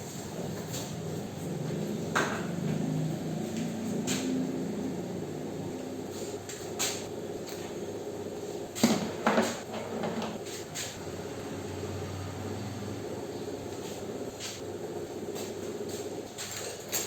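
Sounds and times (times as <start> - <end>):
kitchen items knocking and clattering: 8.8 - 10.4.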